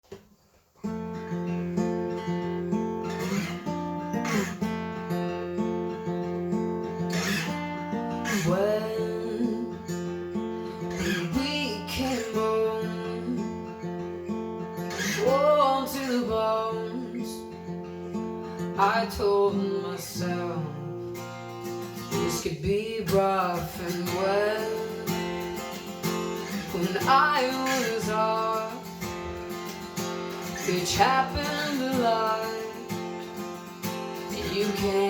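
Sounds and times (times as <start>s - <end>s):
acoustic guitar strumming chords: 0.8s - 35.0s.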